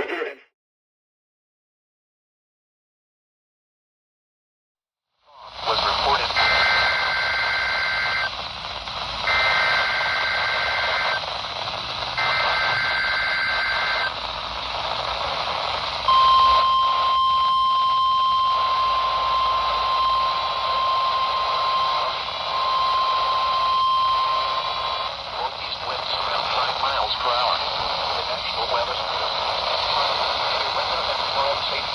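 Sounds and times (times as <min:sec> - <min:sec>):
receiver hiss: 0:05.3 - 0:31.9
buzzy digital data bursts: 0:05.5 - 0:31.9
steady warning alarm tone: 0:06.1 - 0:08.3, 0:09.2 - 0:11.3, 0:12.2 - 0:14.2, 0:16.1 - 0:25.2.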